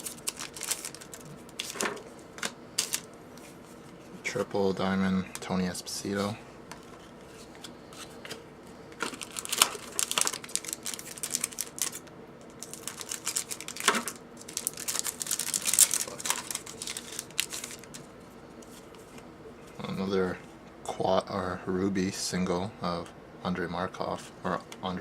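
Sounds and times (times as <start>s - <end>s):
cards clicking and rustling: 0.0s - 3.1s, 9.0s - 18.1s.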